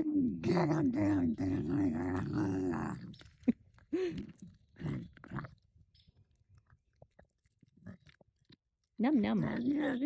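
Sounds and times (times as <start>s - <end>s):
animal chewing and biting: 1.0s - 10.0s.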